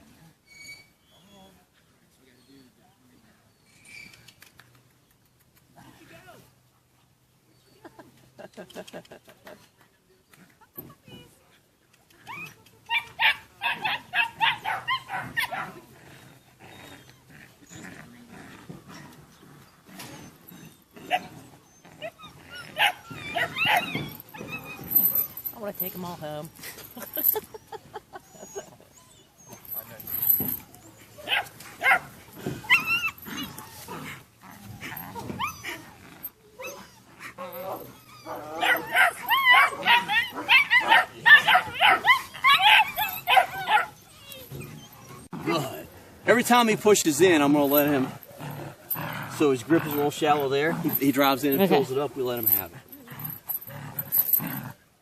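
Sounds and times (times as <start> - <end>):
puppy yipping: 12.2 - 15.8, 20.2 - 25.4, 28.3 - 33.8, 36.6 - 45.3.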